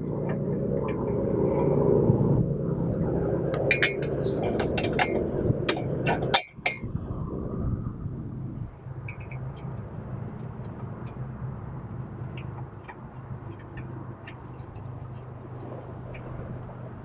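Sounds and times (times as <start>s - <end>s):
steady low hum: 0.0s - 17.0s
small metallic clicks and clinks: 9.0s - 9.8s.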